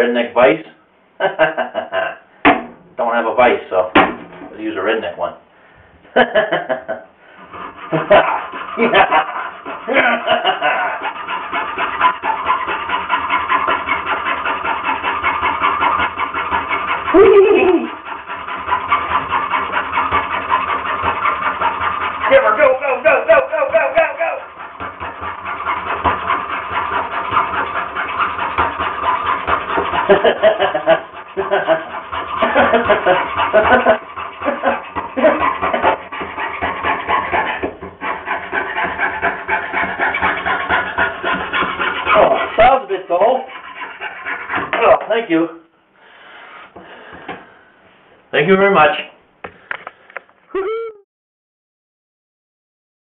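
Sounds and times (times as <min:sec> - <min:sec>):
saw cutting wood: 0:02.4 - 0:05.2, 0:06.2 - 0:45.5
loud cry: 0:50.5 - 0:51.0.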